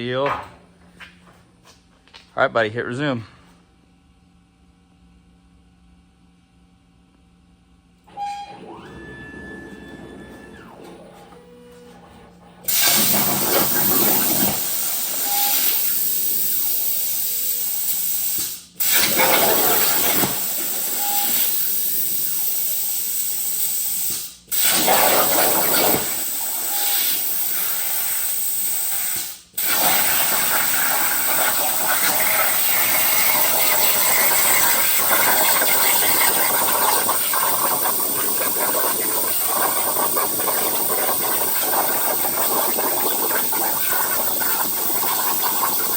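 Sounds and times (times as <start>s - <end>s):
plasma cutter hissing arc: 12.7s - 45.9s.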